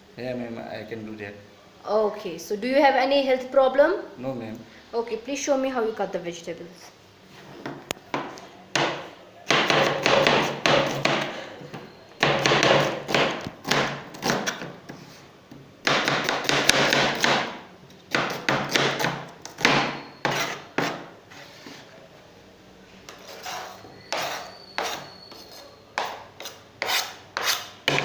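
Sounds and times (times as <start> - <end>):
knife chopping on cutting board: 8.2 - 11.3, 12.2 - 14.7, 15.8 - 21.1.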